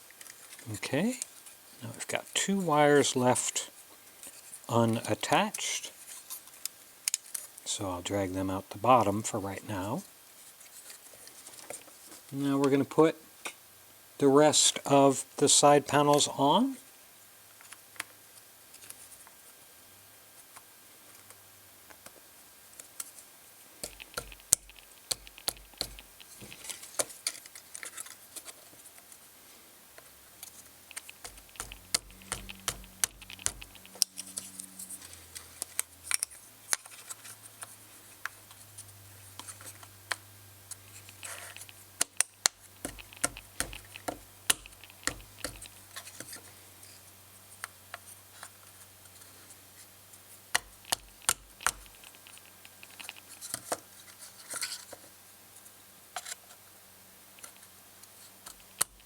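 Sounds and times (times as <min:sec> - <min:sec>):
wooden panels clicking and scraping: 0:30.9 - 0:34.5, 0:42.8 - 0:46.5.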